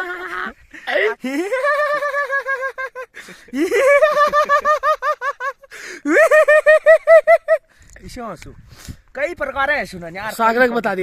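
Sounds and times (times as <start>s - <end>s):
person laughing high-pitched: 0.0s - 7.6s.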